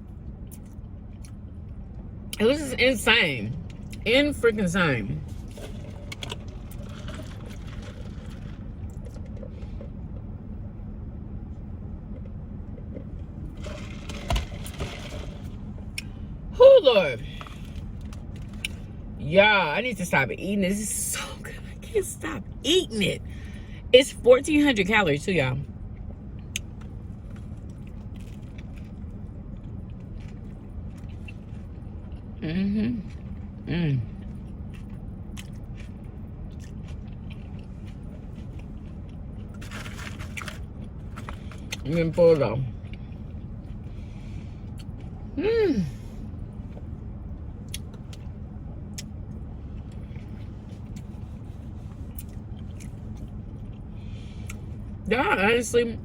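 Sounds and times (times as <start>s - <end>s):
car engine rumbling: 0.0s - 56.0s
low background hum: 0.0s - 56.0s
crackly chewing noises: 26.0s - 32.4s, 33.0s - 41.9s, 47.6s - 54.8s.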